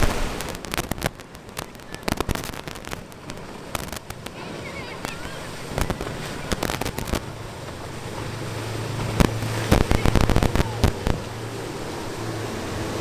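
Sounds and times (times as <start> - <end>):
sharp cracks and pops: 0.0 - 4.4, 5.0 - 7.3, 9.1 - 11.3
motorboat engine humming: 0.0 - 13.0.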